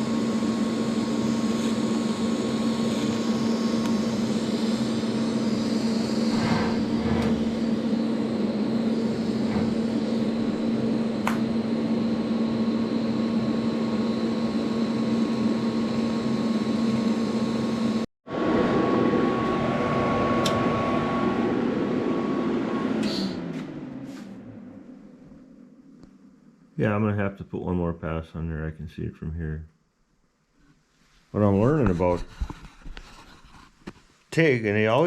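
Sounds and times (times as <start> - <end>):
welding machine hum: 0.0 - 24.0.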